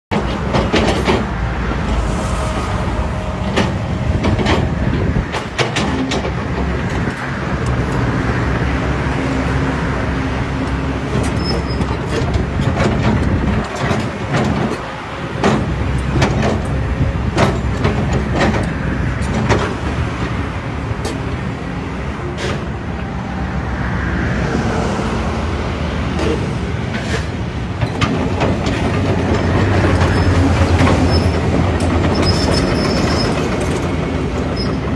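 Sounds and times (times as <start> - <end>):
metallic knocks and clanks: 0.1 - 2.7, 3.4 - 8.0, 10.6 - 21.6, 26.1 - 34.9
excavator diesel engine running: 0.1 - 34.9.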